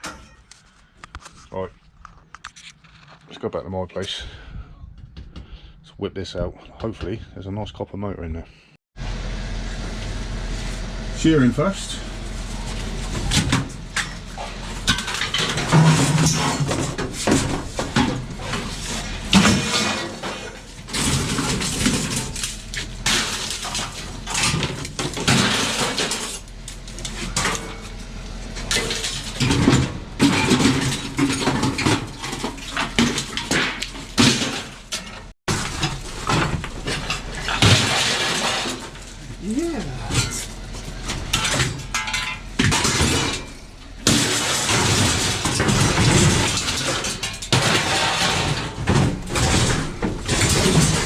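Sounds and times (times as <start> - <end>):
scrap metal clattering: 12.2 - 51.0.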